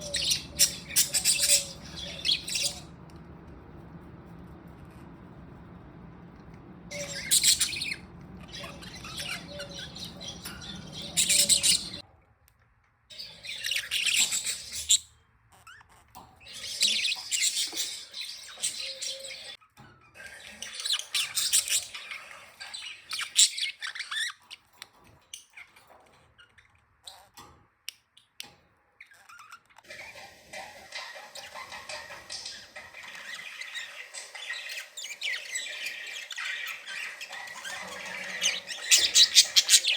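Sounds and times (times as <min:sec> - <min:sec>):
budgerigars chirping: 0:00.0 - 0:03.3, 0:06.6 - 0:12.0, 0:13.1 - 0:15.1, 0:16.4 - 0:19.6, 0:20.3 - 0:24.5, 0:29.9 - 0:39.9
low steady hum: 0:00.0 - 0:12.0.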